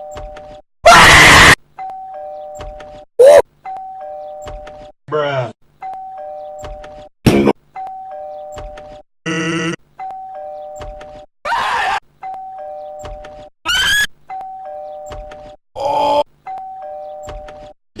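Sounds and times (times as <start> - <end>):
cartoon screams: 0.8 - 1.6, 11.4 - 12.0, 13.7 - 14.1
two-note doorbell chime: 7.8 - 8.8, 10.0 - 10.9, 14.3 - 15.2, 16.5 - 17.6.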